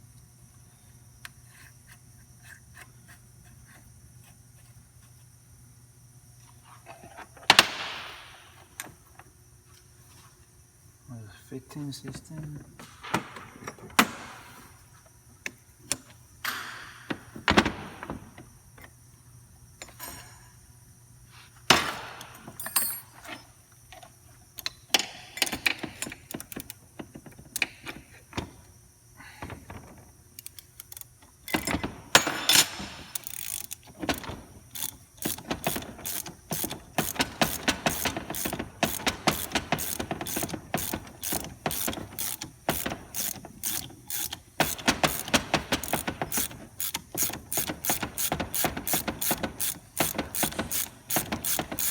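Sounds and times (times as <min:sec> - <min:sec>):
metal tools clinking: 0:22.6 - 0:23.5, 0:31.5 - 0:33.7
ratchet wrench clicking: 0:30.4 - 0:31.7, 0:33.0 - 0:51.9.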